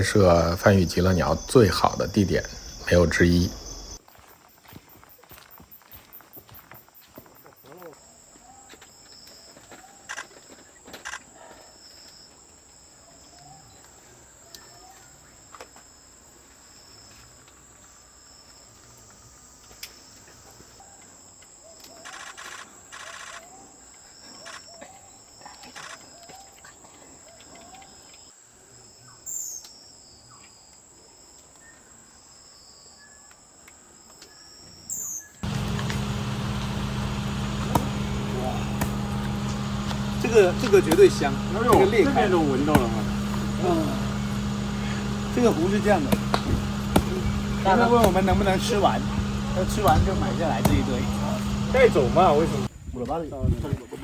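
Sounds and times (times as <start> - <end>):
rattling pulsed call: 0.0 - 4.0
rising bird notes: 0.0 - 4.0
sharp bird calls: 0.0 - 4.0
high insect drone: 0.0 - 8.3, 35.4 - 52.7.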